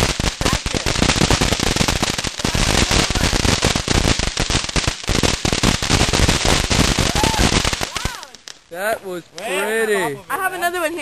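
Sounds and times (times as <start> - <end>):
fireworks cracking and popping: 0.0 - 11.0.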